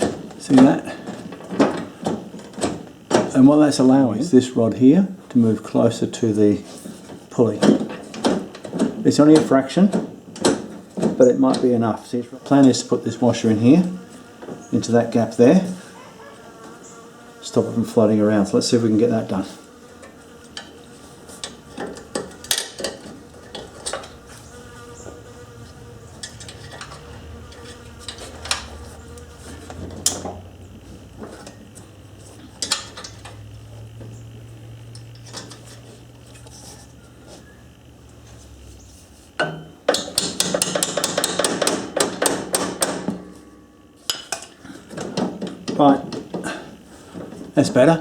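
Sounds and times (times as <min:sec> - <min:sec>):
faint steady hum: 0:00.0 - 0:48.0
metallic clicks of hand tools: 0:39.4 - 0:43.2.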